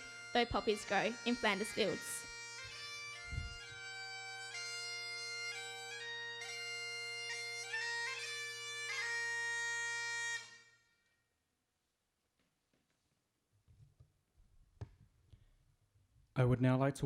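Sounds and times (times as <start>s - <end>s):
bagpipes playing a melody: 0.0s - 11.0s.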